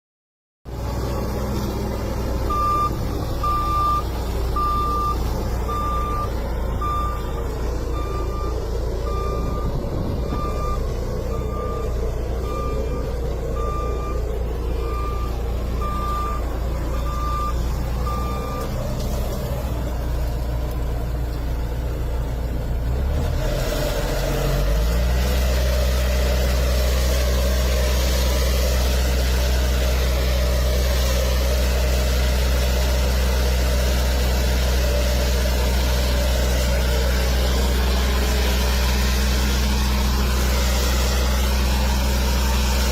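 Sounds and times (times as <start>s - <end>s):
truck engine running: 0.6s - 42.9s
truck reversing alarm beeping: 1.0s - 20.4s, 24.3s - 42.9s.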